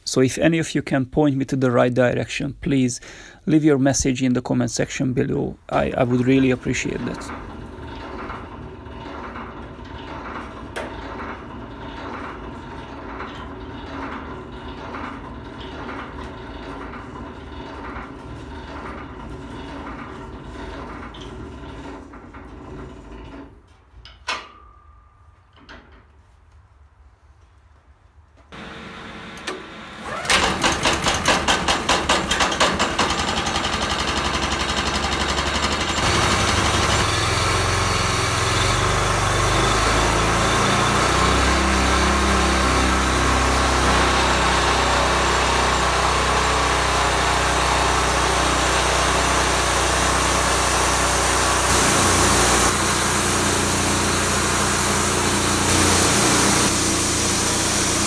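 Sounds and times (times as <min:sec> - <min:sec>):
petrol engine running: 0:28.6 - 0:58.0.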